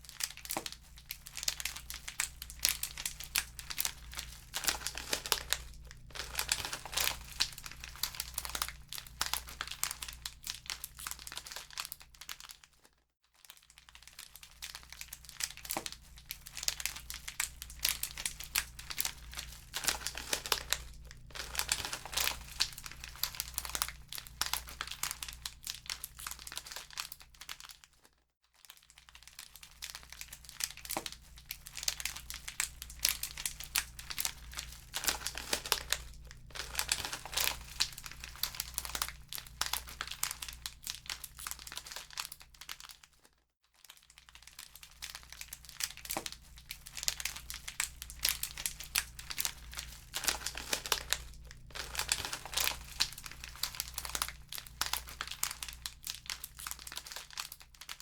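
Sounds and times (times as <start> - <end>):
wood fire crackling: 1.4 - 10.4, 16.6 - 25.0, 32.0 - 41.1, 47.0 - 57.0
steady low hum: 2.0 - 10.4, 16.2 - 25.6, 32.4 - 40.8.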